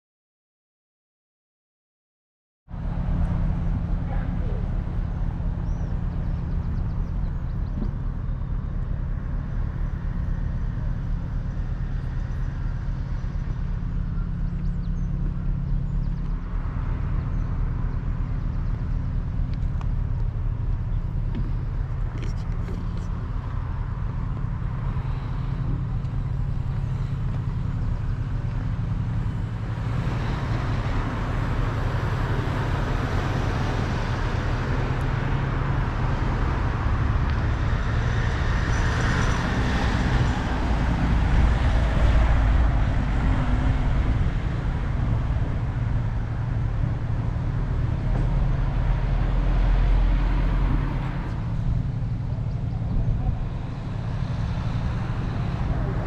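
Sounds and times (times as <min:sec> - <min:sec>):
road traffic rumble: 0:02.7 - 0:56.0
vehicle passing: 0:20.0 - 0:56.0.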